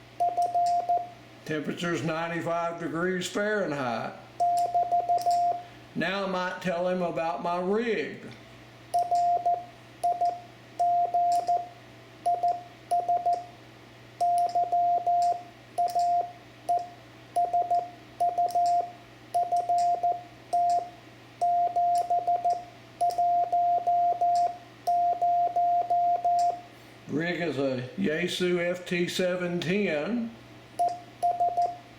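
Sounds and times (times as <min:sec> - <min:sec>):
morse code tone: 0:00.2 - 0:01.2, 0:04.4 - 0:05.7, 0:09.0 - 0:11.7, 0:12.3 - 0:13.5, 0:14.2 - 0:26.6, 0:30.8 - 0:31.8.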